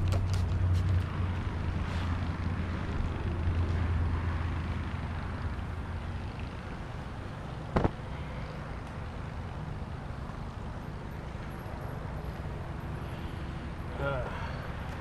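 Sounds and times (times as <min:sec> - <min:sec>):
sharp knock: 0:07.8 - 0:08.0.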